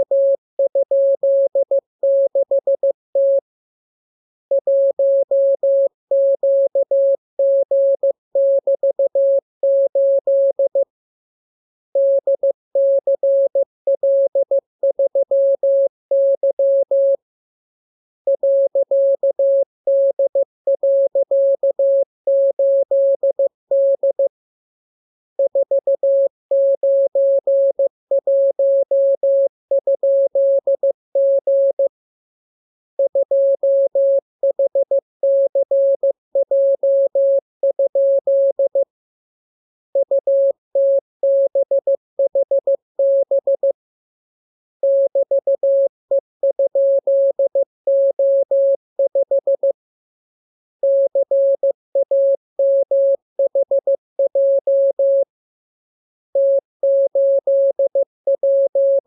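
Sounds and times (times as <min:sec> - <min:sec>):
morse code tone: 0:00.0 - 0:03.4, 0:33.0 - 0:38.8, 0:40.0 - 0:43.7, 0:44.8 - 0:49.7, 0:50.8 - 0:55.2, 0:56.4 - 0:59.0.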